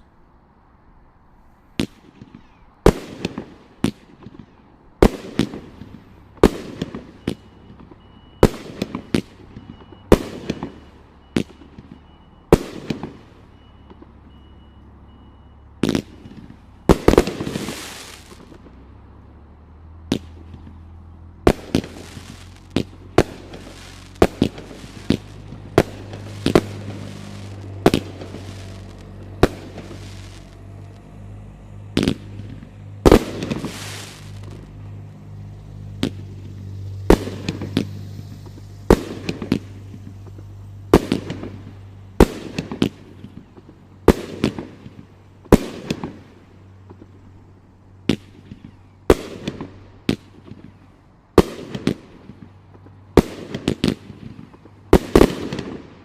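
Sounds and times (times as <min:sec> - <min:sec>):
fireworks reports with rumbling tails: 0:01.7 - 0:56.0
rushing firework burst: 0:15.8 - 0:18.8, 0:21.4 - 0:43.5.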